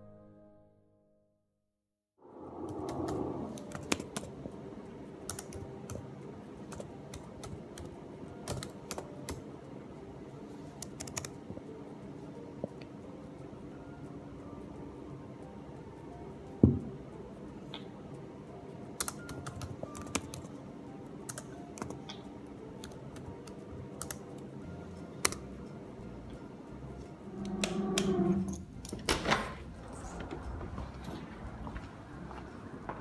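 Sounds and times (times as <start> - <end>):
typing on computer keyboard: 2.7 - 4.3, 5.3 - 6.0, 6.7 - 9.4, 10.8 - 11.4, 19.0 - 20.5, 21.3 - 22.0, 22.8 - 24.3
knock: 16.6 - 16.9.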